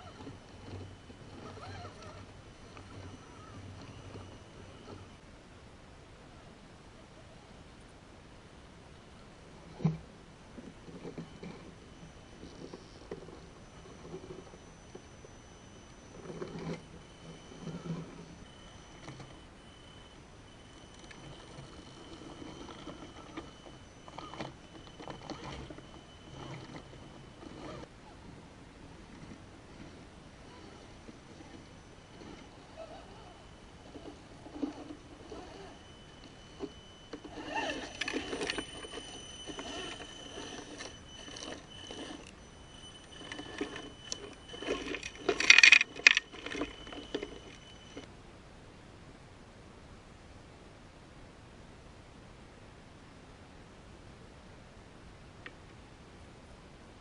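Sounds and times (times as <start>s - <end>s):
model truck rattling and clicking: 0.0s - 5.1s, 29.1s - 48.1s
electric motor whine: 0.0s - 5.2s, 9.5s - 48.1s
toy truck clicks and knocks: 43.2s - 48.1s.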